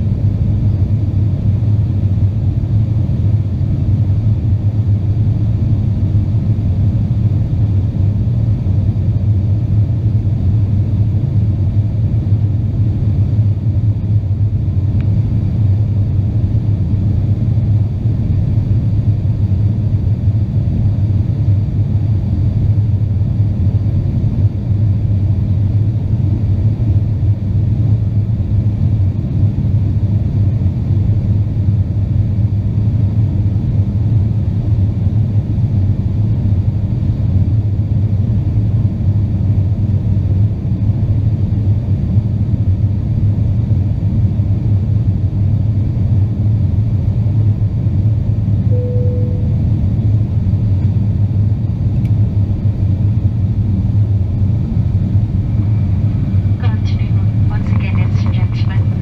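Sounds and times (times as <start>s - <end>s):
jet engine drone in cabin: 0.0s - 59.0s.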